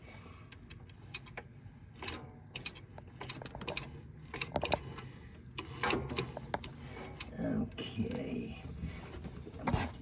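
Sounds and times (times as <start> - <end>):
light metallic clicks and rattles: 0.5 - 7.3.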